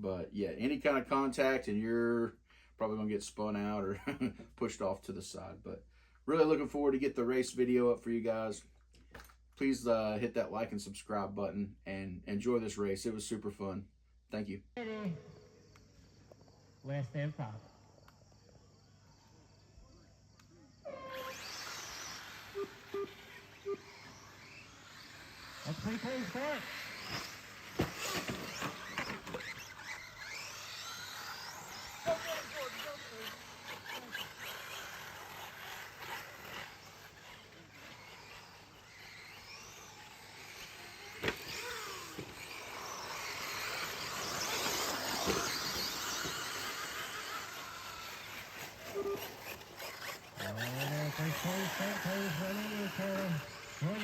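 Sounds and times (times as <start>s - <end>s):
tyres on dirt track: 0.0s - 54.0s
faint crickets: 12.5s - 46.5s
rc trucks running hiss: 15.2s - 54.0s
timing system beeps: 48.9s - 49.3s.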